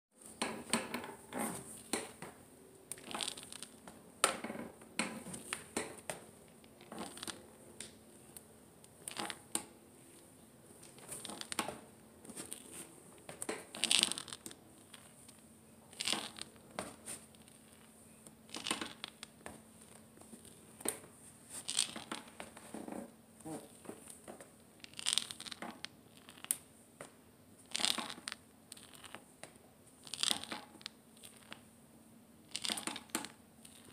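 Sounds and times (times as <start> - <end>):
knee joint crunching: 2.9 - 6.2, 6.8 - 8.0, 10.8 - 17.9, 18.5 - 26.6, 27.7 - 29.2.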